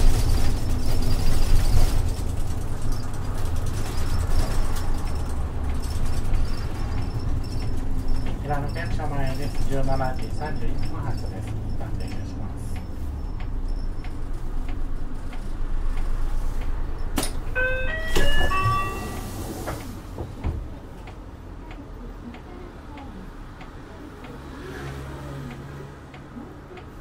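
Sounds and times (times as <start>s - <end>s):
bus engine idling: 0.0s - 24.3s
indicator relay ticking: 5.3s - 16.8s
bus door chime: 17.0s - 20.8s.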